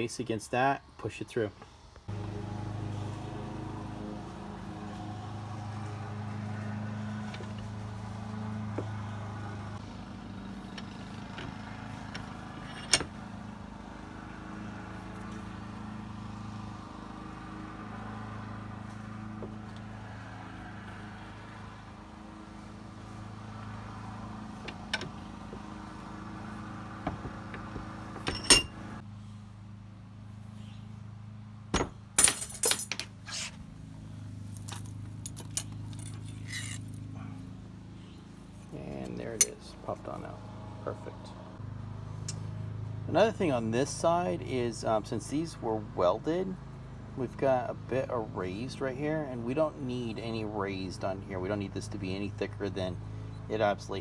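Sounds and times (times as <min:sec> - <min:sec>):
bench vise pressing metal shaft: 0:12.2 - 0:13.2, 0:27.2 - 0:28.9
metal clatter: 0:28.1 - 0:28.9, 0:31.8 - 0:33.5, 0:34.5 - 0:37.0.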